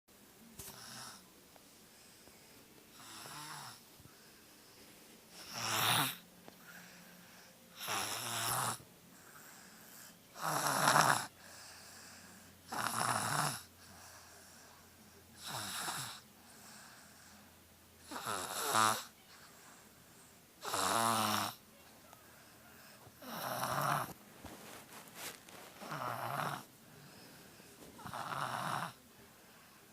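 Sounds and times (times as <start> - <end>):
heavy snoring: 2.9 - 3.8, 5.3 - 6.2, 7.8 - 8.8, 10.3 - 13.7, 15.4 - 16.9, 18.0 - 19.1, 20.6 - 21.6, 23.2 - 24.2, 25.8 - 27.4, 28.0 - 29.0.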